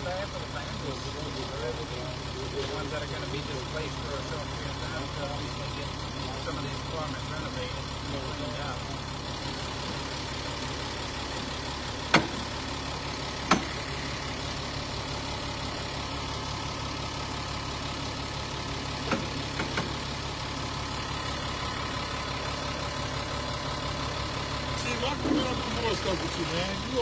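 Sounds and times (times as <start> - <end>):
vehicle engine idling: 0.0 - 27.0
sharp knocks: 12.1 - 12.6, 13.4 - 13.9.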